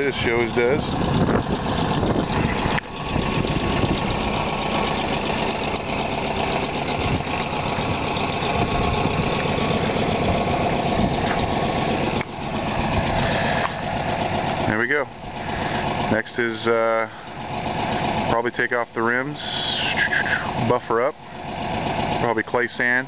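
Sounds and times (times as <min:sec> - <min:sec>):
car engine idling: 0:00.0 - 0:23.0.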